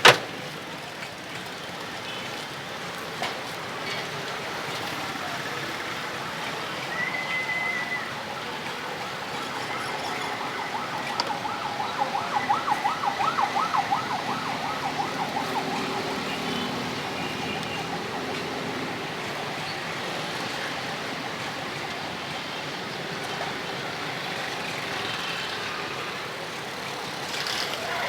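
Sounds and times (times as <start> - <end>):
street noise: 0.0 - 28.0
wavering siren: 6.2 - 22.2.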